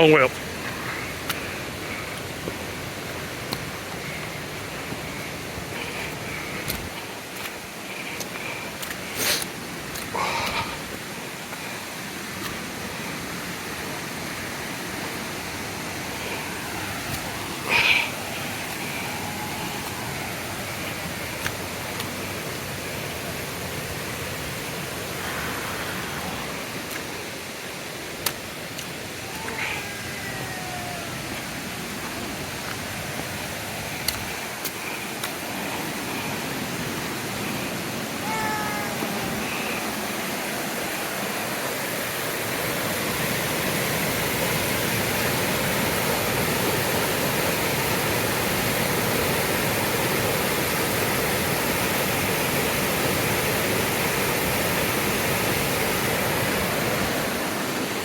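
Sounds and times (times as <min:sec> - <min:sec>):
short falling calls: 0:15.9 - 0:21.0, 0:29.1 - 0:31.7.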